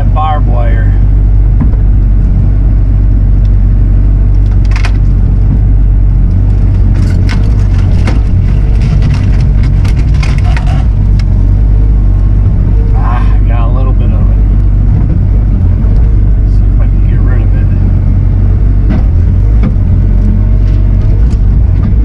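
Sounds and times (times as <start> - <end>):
diesel engine running hard: 0.0 - 22.0
wood cracking and splintering: 4.3 - 11.4.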